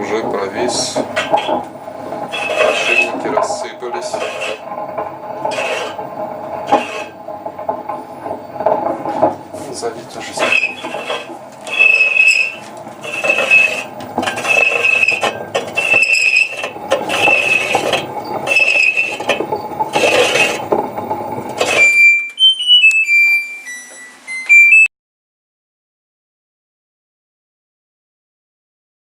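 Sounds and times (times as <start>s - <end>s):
washing machine drum squealing and scraping: 0.0s - 24.9s
electronic beep melody: 21.8s - 24.9s.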